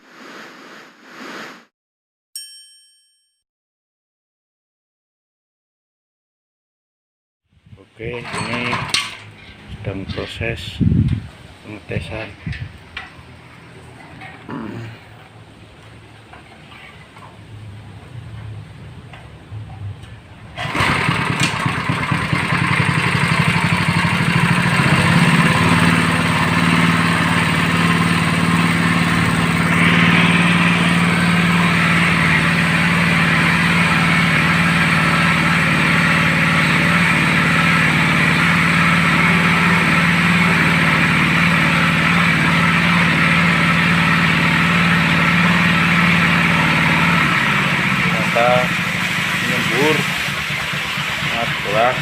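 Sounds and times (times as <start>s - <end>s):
engine-driven pump running: 8.0s - 10.7s, 19.1s - 52.0s.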